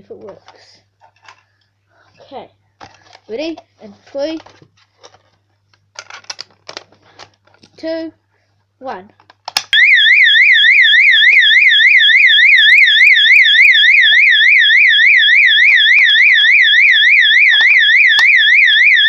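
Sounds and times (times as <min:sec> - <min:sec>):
fire alarm horn sweeping: 0:09.8 - 0:19.0.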